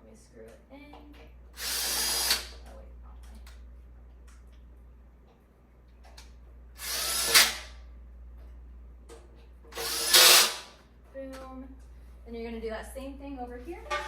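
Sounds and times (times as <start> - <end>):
cordless drill driving screws: 1.6 - 2.6, 6.8 - 7.7, 9.8 - 10.7.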